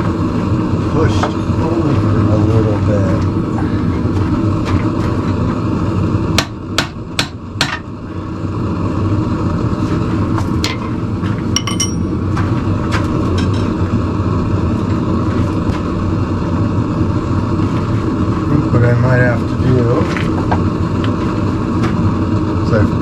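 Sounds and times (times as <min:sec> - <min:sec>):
hammer striking steel on anvil: 0:11.6 - 0:12.2.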